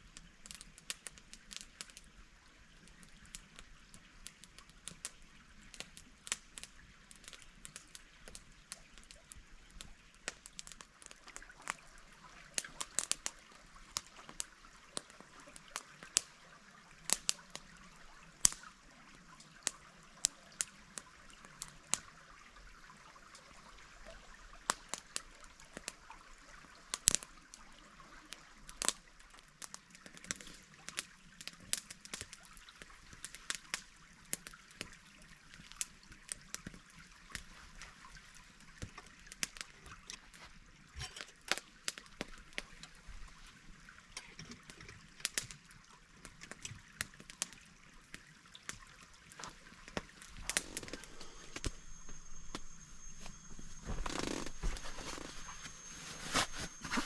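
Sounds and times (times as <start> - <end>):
stream trickling: 0.0 - 57.0
sharp clicks and pops: 49.4 - 57.0.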